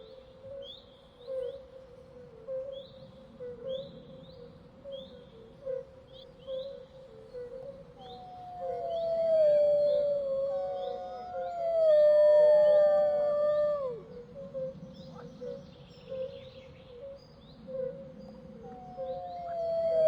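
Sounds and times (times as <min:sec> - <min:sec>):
wolf howling: 0:08.3 - 0:14.2, 0:18.8 - 0:20.0.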